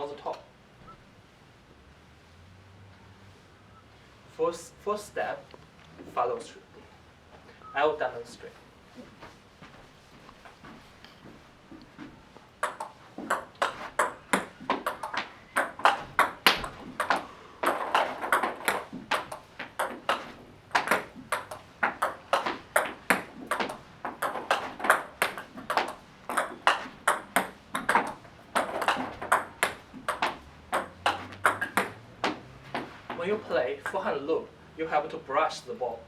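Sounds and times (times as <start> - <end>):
table tennis ball clicking: 12.6 - 32.9.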